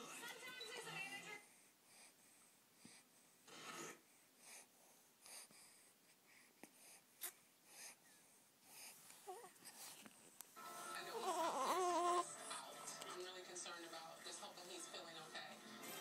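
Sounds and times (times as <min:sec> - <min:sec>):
baby breathing and snuffling: 0:01.5 - 0:10.4, 0:11.0 - 0:12.6.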